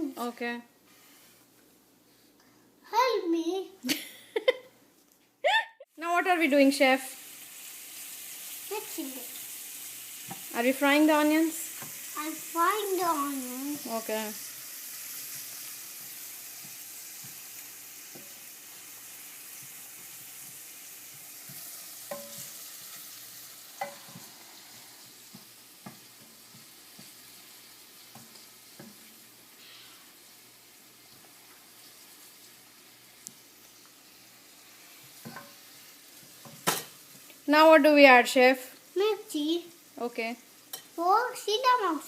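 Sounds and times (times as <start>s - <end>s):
onions sizzling in oil: 5.9s - 42.0s.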